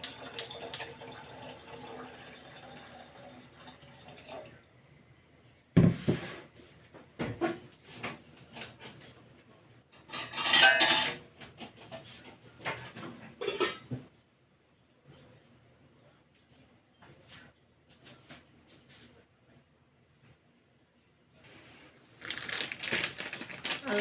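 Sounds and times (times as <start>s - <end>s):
pots and dishes clinking: 10.0s - 14.0s
dishes clattering: 10.0s - 14.1s.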